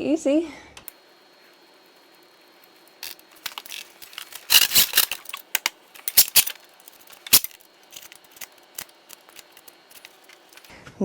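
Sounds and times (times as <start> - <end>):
metal parts clinking and knocking: 3.0 - 10.7.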